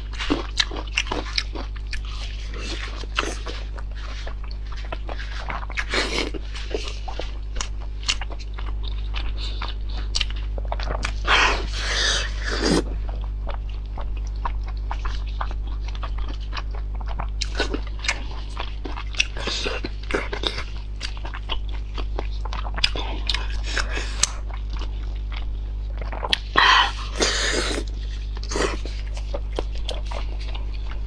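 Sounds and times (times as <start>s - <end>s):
person chewing crunchy food: 0.0s - 31.0s
steady low hum: 0.0s - 31.0s.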